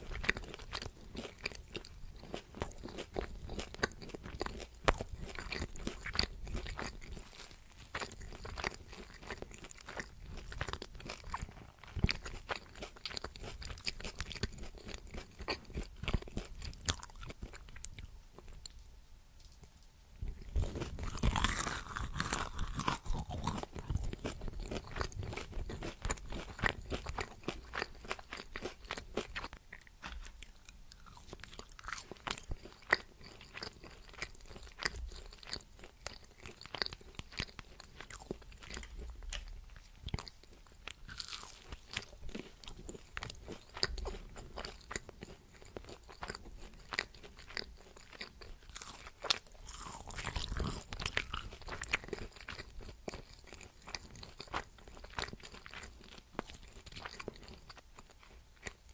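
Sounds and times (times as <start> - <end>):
person chewing crunchy food: 0.0 - 18.8, 20.2 - 58.9.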